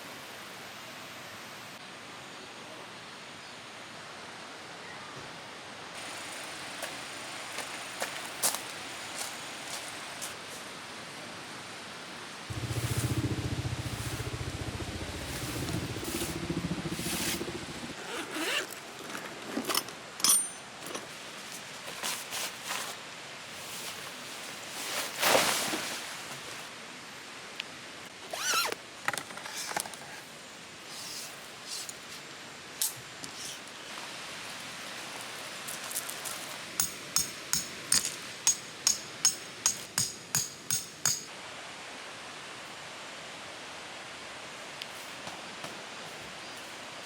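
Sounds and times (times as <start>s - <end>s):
steady hiss: 5.4s - 18.6s, 21.0s - 47.0s
low engine hum: 12.5s - 18.0s.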